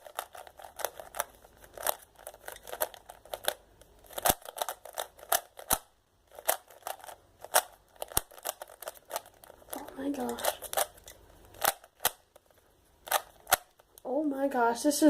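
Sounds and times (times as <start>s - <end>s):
puzzle cube clicking: 0.0s - 14.1s.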